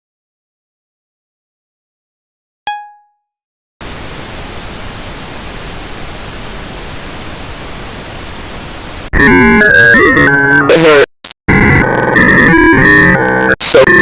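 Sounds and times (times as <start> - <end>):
short electronic ping: 2.7 - 3.2
loud static hiss: 3.8 - 9.2.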